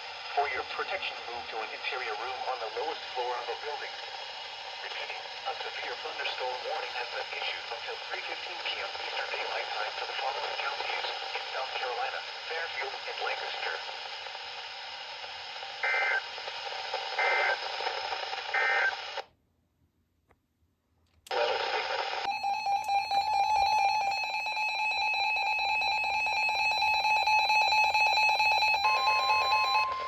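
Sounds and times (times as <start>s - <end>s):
radio hiss: 0.0s - 19.2s, 21.3s - 22.3s
emergency alert data bursts: 22.2s - 30.0s
steady warning tone: 22.3s - 30.0s
two-tone attention signal: 27.9s - 30.0s.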